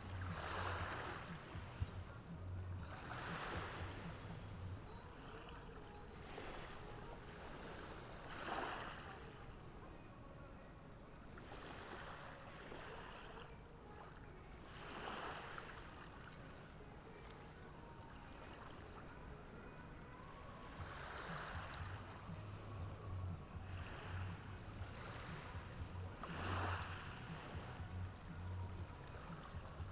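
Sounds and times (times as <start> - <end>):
faint low rumble: 0.0 - 7.4, 16.4 - 29.9
small waves breaking on beach: 0.0 - 29.9.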